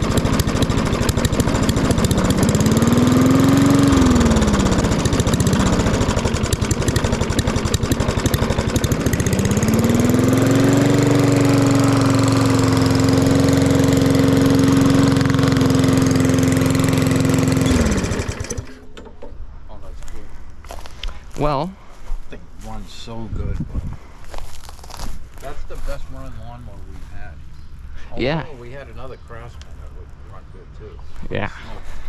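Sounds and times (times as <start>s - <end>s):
lawn mower engine revving: 0.0s - 18.9s.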